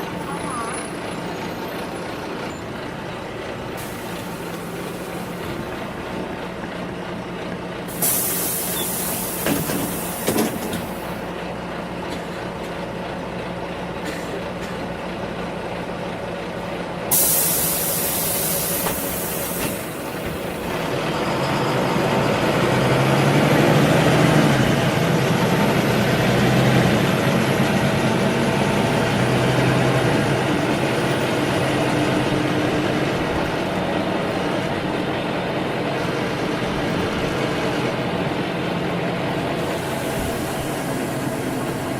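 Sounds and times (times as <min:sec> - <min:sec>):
bus engine running: 0:00.0 - 0:41.9
compressed air hissing: 0:03.8 - 0:05.7, 0:07.9 - 0:11.2, 0:17.1 - 0:20.6, 0:39.6 - 0:41.9.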